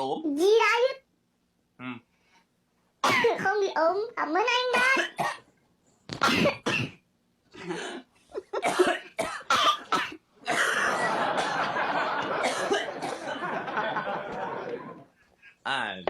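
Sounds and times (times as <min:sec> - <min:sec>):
people coughing: 0:03.0 - 0:03.4, 0:06.2 - 0:07.0, 0:07.6 - 0:14.8.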